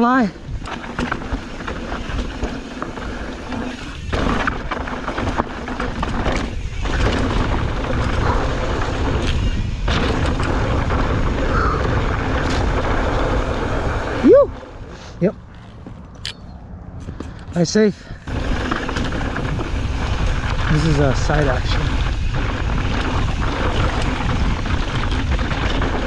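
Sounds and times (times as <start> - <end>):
wind rushing over microphone: 0.0 - 15.5, 16.6 - 26.0
tyres rumbling over dirt and rocks: 0.4 - 16.1, 17.1 - 26.0
bike knocks and rattles: 0.5 - 11.4, 17.0 - 26.0.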